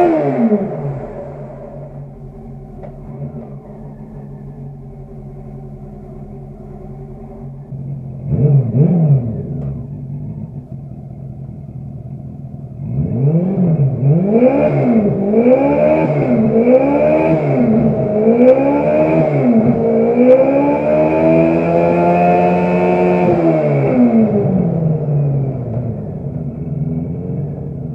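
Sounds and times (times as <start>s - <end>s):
motorcycle engine revving: 0.0s - 27.9s.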